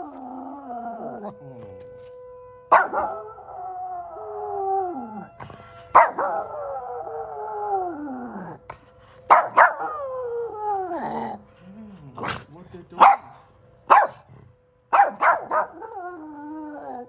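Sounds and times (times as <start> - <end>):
dog howling: 0.0 - 11.5, 15.0 - 17.0
emergency siren: 0.0 - 17.0.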